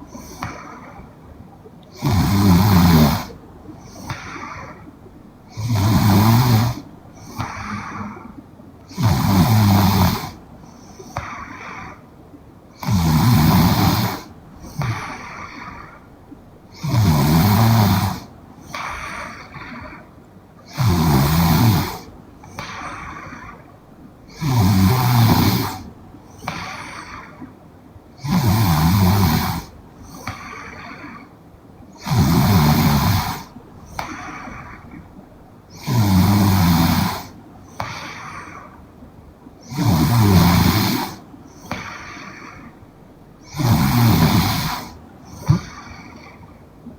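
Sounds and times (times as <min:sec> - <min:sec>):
woman snoring: 0:02.0 - 0:04.8, 0:05.5 - 0:10.4, 0:12.8 - 0:16.0, 0:16.8 - 0:19.7, 0:20.7 - 0:23.6, 0:24.3 - 0:27.2, 0:28.2 - 0:31.3, 0:32.0 - 0:34.8, 0:35.8 - 0:38.6, 0:39.6 - 0:42.7, 0:43.4 - 0:46.4.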